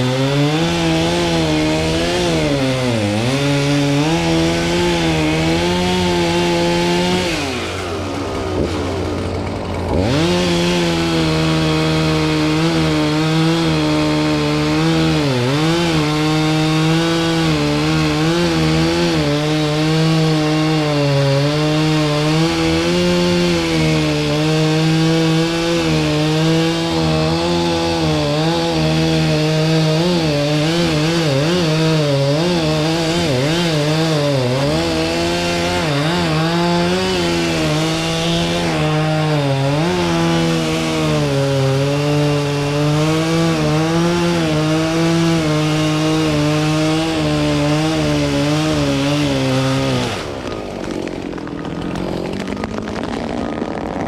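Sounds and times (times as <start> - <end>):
chainsaw cutting: 0.0 - 54.0.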